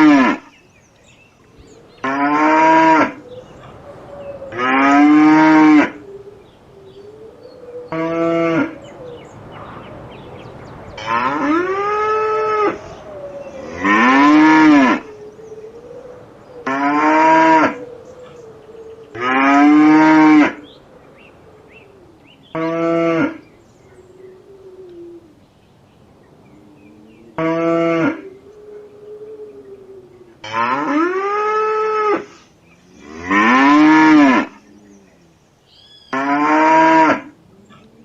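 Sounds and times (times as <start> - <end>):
cattle mooing: 4.5 - 6.0, 11.0 - 12.9, 13.6 - 15.1, 33.0 - 34.6.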